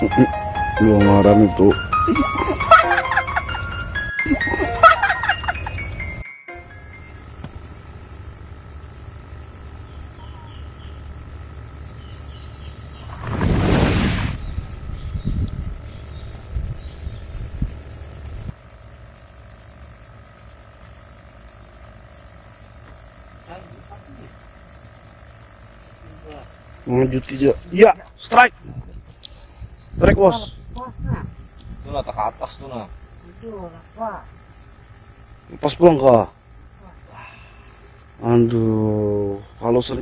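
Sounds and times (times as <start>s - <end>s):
insects chirping: 0.0s - 40.0s
loud rush of noise: 13.0s - 14.6s.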